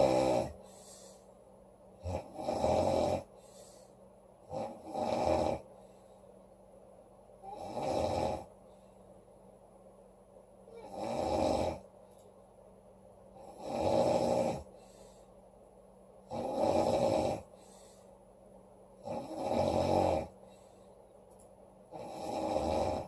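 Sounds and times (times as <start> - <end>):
woman snoring loudly: 0.0 - 0.6, 2.0 - 3.3, 4.5 - 5.7, 7.4 - 8.5, 10.8 - 11.8, 13.4 - 14.7, 16.3 - 17.5, 19.0 - 20.4, 21.9 - 23.0
soft breath out: 0.6 - 1.4, 3.3 - 4.1, 5.7 - 6.5, 14.7 - 15.5, 17.5 - 18.2, 20.4 - 21.1.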